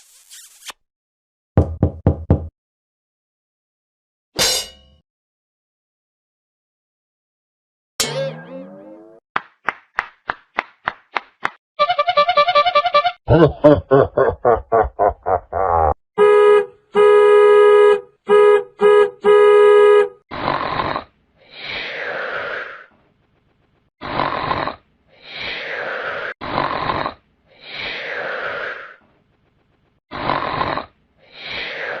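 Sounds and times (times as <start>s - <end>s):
horn-like buzzing honks: 11.8s - 13.2s, 16.2s - 20.2s
cartoon snoring: 20.3s - 22.9s, 24.0s - 29.0s, 30.1s - 32.0s.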